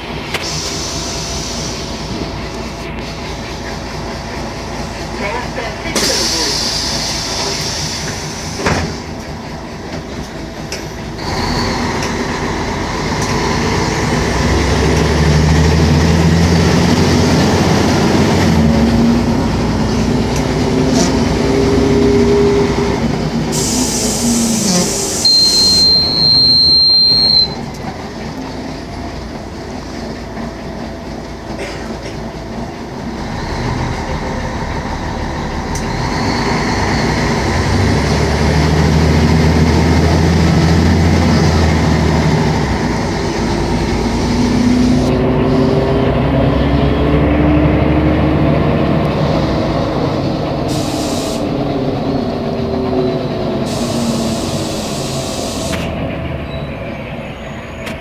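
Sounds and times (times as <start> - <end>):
bus engine: 0.0 - 58.0
high beep: 25.2 - 27.6.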